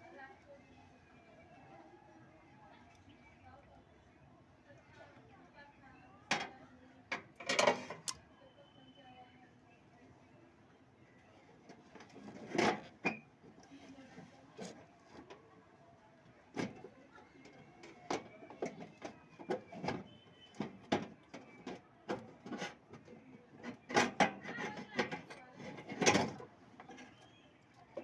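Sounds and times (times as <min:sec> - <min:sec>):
clicks and knocks of metal parts: 0:06.3 - 0:08.2.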